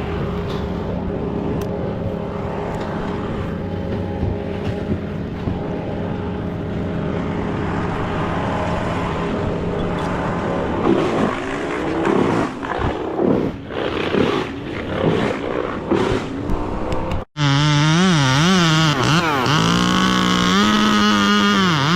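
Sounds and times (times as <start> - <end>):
chainsaw revving: 17.4 - 21.9.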